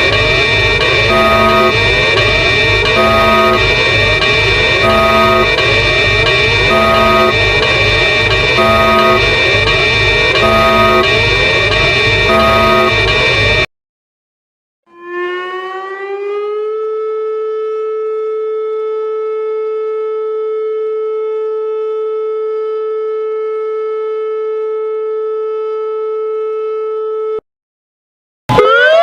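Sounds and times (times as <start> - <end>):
warning siren tone: 0.0 - 13.7, 14.9 - 27.4, 28.5 - 29.0.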